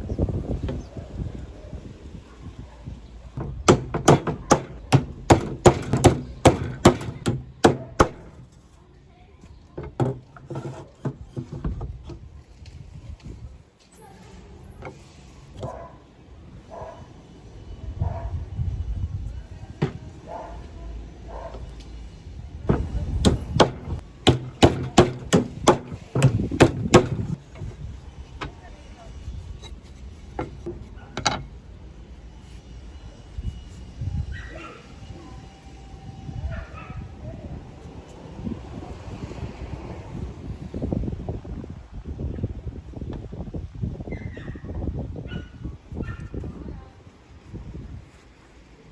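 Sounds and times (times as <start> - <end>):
hammer knocking on wood: 3.4 - 8.5, 19.8 - 20.1, 22.7 - 27.4.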